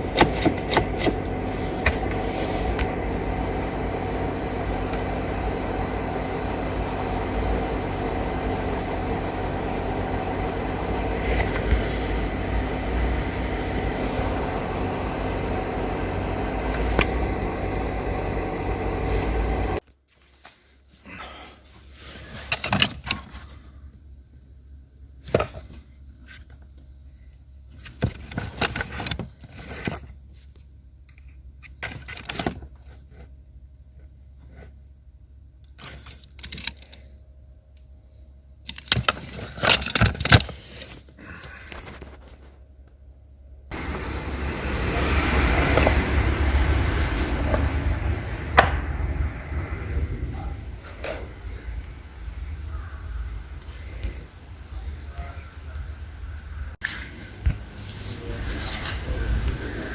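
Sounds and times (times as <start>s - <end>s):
car engine running: 0.0s - 19.8s, 43.4s - 59.9s
clicks and rattles of handling: 35.6s - 37.0s, 38.6s - 41.1s.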